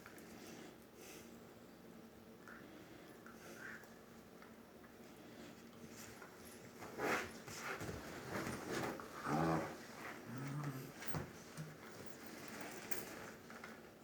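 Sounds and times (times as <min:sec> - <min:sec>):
small dog growling: 0:09.2 - 0:11.0.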